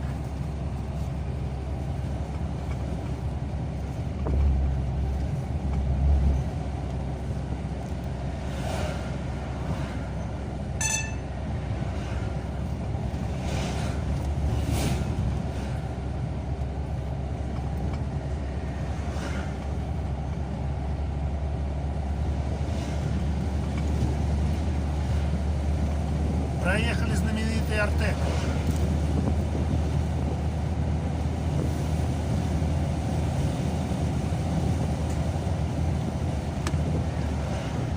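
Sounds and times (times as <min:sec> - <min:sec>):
car engine and tyre rumble: 0:00.0 - 0:37.9
brief high-pitched tone: 0:10.8 - 0:11.3.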